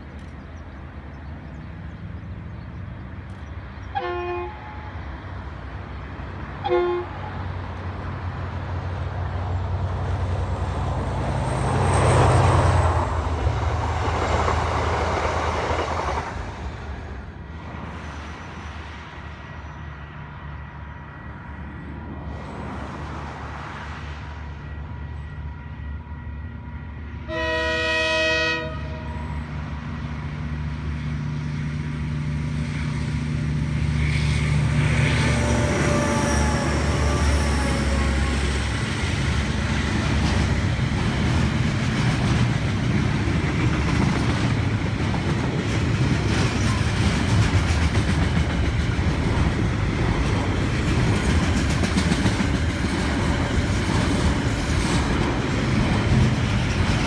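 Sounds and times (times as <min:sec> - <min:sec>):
train engine rumble: 0:00.0 - 0:57.0
train horn: 0:03.9 - 0:05.2, 0:06.6 - 0:07.6, 0:24.3 - 0:29.6, 0:34.2 - 0:38.9.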